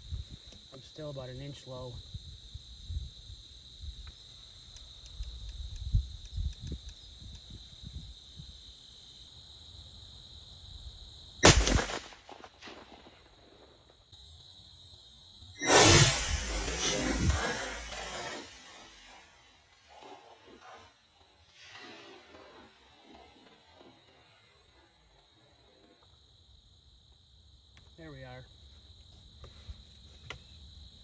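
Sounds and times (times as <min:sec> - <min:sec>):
crickets trilling: 0:00.0 - 0:31.0
rifle shot: 0:11.4 - 0:13.7, 0:15.6 - 0:20.8
loud rush of noise: 0:15.6 - 0:19.3.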